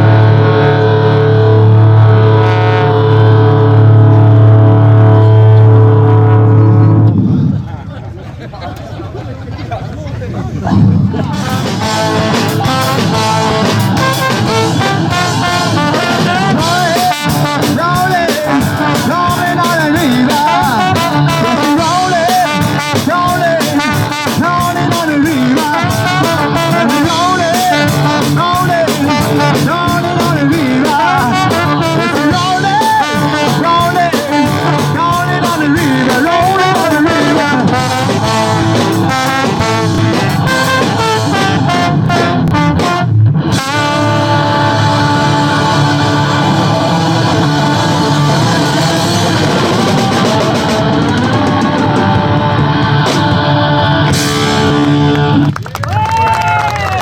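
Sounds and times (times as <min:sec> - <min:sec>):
lead guitar bending notes: 0:00.0 - 0:07.6, 0:10.7 - 0:55.5
bass guitar: 0:00.0 - 0:08.9, 0:09.7 - 0:57.0
drum beats: 0:10.6 - 0:57.0.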